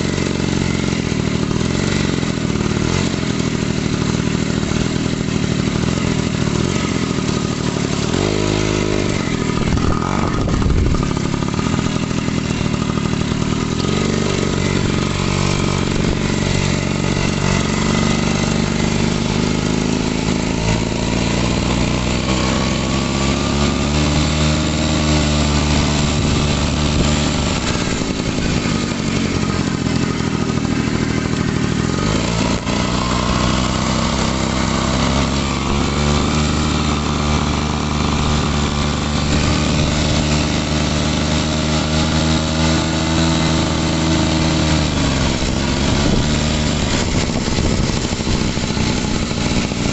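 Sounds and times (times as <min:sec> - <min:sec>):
motorcycle engine running: 0:00.0 - 0:49.9.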